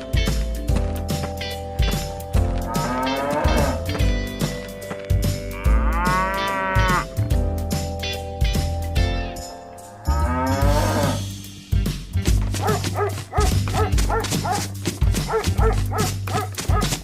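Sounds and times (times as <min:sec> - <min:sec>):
backing tune with steady beat: 0:00.0 - 0:17.0
cow mooing: 0:02.6 - 0:04.0, 0:05.1 - 0:07.2, 0:10.0 - 0:11.3
dog yips: 0:12.6 - 0:14.7, 0:15.3 - 0:16.9.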